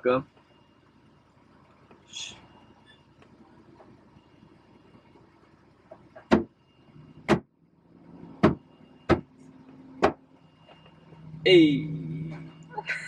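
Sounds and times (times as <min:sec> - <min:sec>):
sharp knocks: 0:06.2 - 0:06.5, 0:07.3 - 0:07.5, 0:08.4 - 0:09.3, 0:10.0 - 0:10.2.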